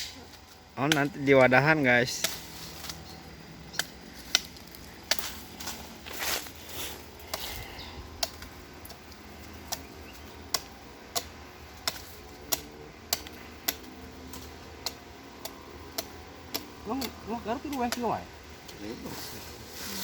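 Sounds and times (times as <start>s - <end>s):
machete chopping vine stem: 2.1s - 3.1s, 3.7s - 6.5s, 7.2s - 18.8s
rustle of handling: 4.1s - 7.8s, 18.7s - 20.0s.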